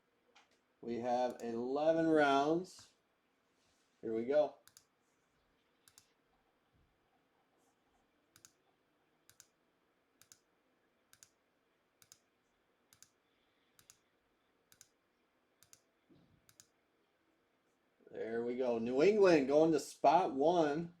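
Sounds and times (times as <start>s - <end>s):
faint computer mouse clicks: 1.3s - 1.5s, 4.6s - 4.9s, 5.8s - 6.2s, 8.3s - 8.7s, 9.3s - 9.6s, 10.2s - 10.5s, 11.1s - 11.4s, 12.0s - 12.3s, 12.9s - 13.2s, 13.8s - 14.1s, 14.7s - 15.0s, 15.6s - 15.9s, 16.5s - 16.8s.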